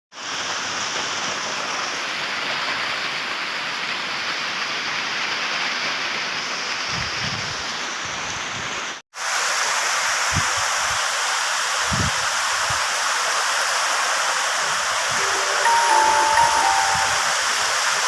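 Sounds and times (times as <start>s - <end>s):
heavy rain: 0.2s - 6.9s.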